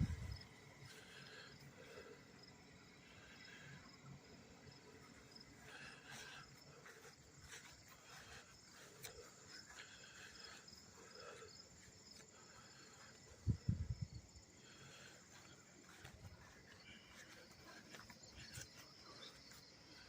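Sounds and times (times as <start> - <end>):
small ticks: 6.8 - 10.4.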